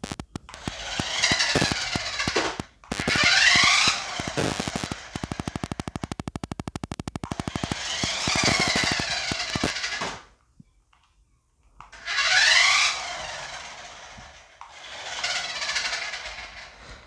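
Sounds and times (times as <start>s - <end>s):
toy electronic siren noise: 0.0s - 9.7s.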